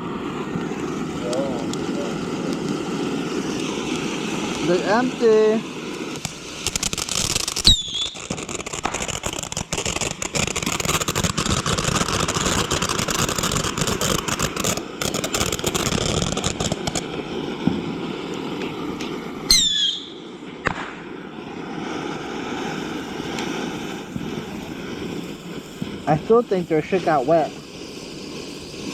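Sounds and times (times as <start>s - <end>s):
fireworks crackling: 0.0s - 28.9s
loud firework bangs: 0.0s - 28.9s
falling whistle: 7.6s - 8.3s, 19.5s - 20.2s
sharp pop: 19.0s - 21.0s.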